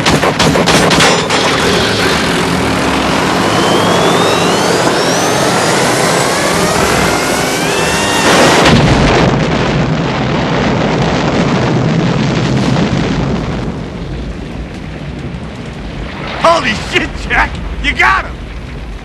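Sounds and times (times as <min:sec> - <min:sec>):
loud explosion: 0:00.0 - 0:19.0
helicopter engine whine: 0:01.3 - 0:09.2.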